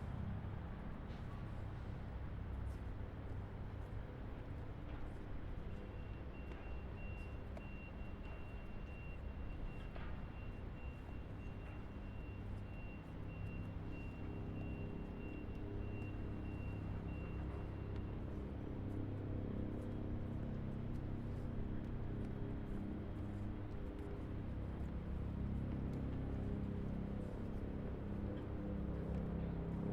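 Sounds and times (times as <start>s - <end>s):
road and engine rumble: 11.0s - 29.9s.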